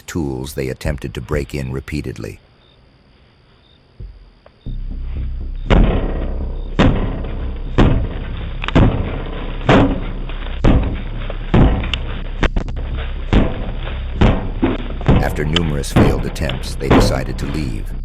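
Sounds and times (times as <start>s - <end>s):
door being struck hard: 5.6s - 17.4s.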